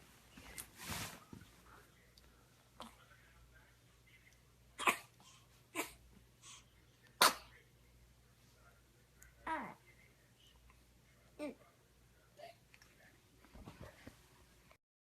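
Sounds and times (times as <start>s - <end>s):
baby sneezing: 4.8s - 5.2s, 5.8s - 6.0s, 7.2s - 7.6s.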